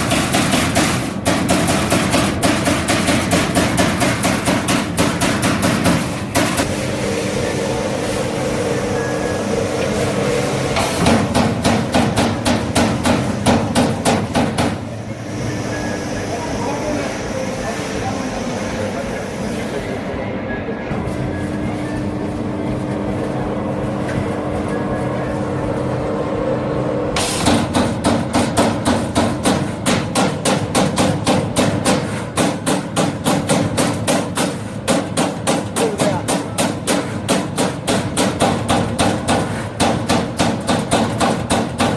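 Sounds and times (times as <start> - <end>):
punch press punching sheet metal: 0.0 - 6.8, 10.7 - 14.9, 27.2 - 41.9
machine hum: 4.2 - 28.9.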